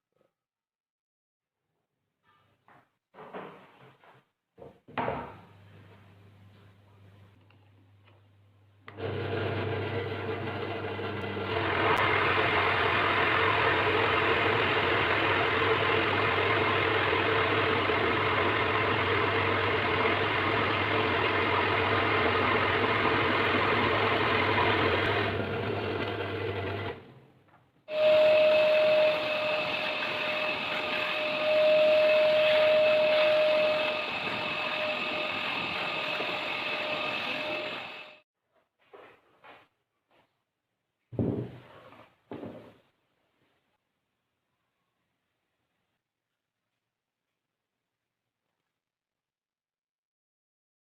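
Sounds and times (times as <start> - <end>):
power tool motor running: 8.9 - 27.1, 27.9 - 38.2
whining motor: 8.9 - 27.1, 27.9 - 38.2.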